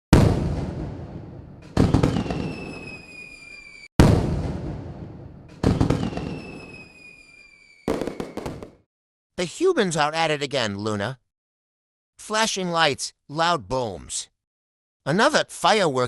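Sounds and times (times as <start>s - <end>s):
firework boom: 0.1s - 3.3s, 4.0s - 7.0s
firework burst crackling: 1.8s - 8.8s
high whistle falling in pitch: 2.1s - 3.9s, 6.0s - 8.6s.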